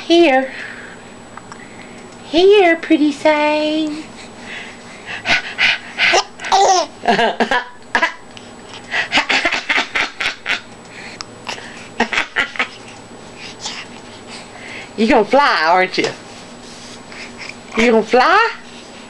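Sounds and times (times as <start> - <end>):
baby laughing: 6.0 - 7.2, 9.1 - 10.7.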